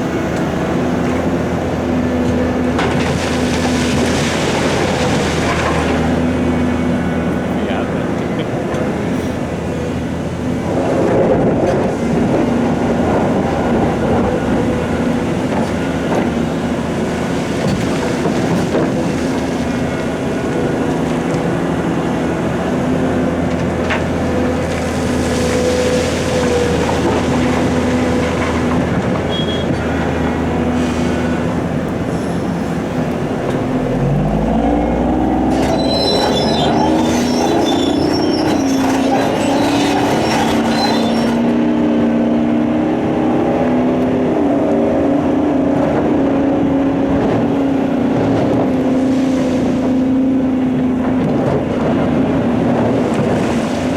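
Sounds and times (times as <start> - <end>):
diesel engines running: 0.0 - 53.9
engine revving up: 33.6 - 37.8.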